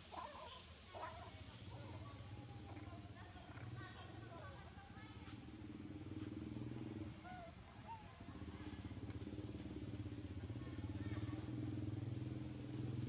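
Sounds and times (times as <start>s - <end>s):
high insect drone: 0.0s - 13.0s
small engine running: 8.4s - 13.0s.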